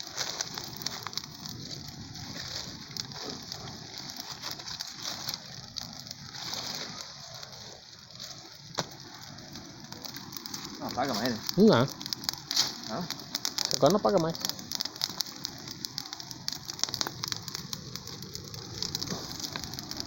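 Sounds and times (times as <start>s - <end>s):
bonfire crackling and popping: 0.0s - 20.0s
fire hissing: 0.0s - 20.0s.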